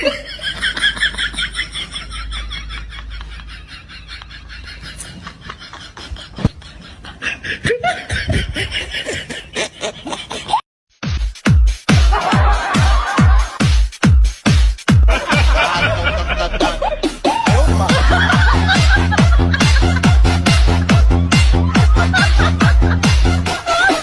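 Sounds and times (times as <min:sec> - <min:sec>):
high-pitched laughter: 0:00.0 - 0:10.6, 0:15.1 - 0:24.0
snickering: 0:00.0 - 0:10.6, 0:15.1 - 0:24.0
electronic dance music: 0:11.0 - 0:24.0.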